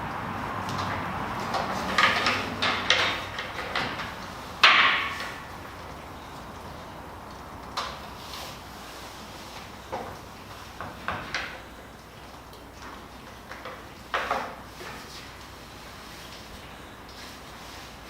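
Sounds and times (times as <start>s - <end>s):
hardware clicks and knocks: 0.7s - 5.9s.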